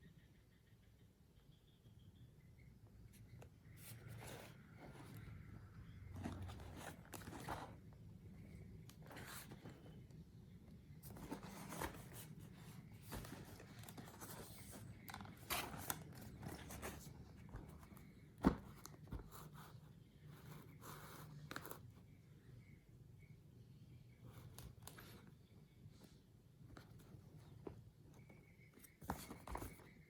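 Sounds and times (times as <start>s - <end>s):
packaging rustling and scraping: 3.8s - 5.4s, 6.1s - 10.0s, 11.0s - 19.6s.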